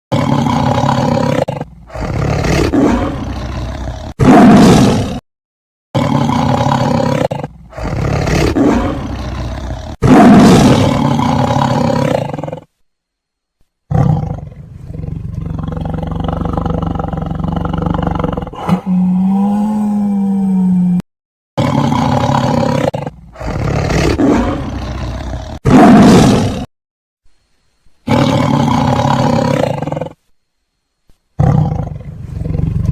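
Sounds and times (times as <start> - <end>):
big cats roaring: 0.1 - 5.2, 6.0 - 12.7, 13.9 - 21.0, 21.6 - 26.7, 28.1 - 30.2, 31.4 - 32.9
low steady growl: 13.9 - 21.0.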